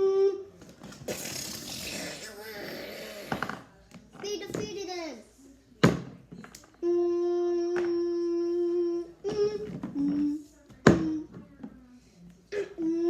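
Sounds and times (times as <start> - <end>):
child humming: 0.0 - 0.5, 6.8 - 10.4.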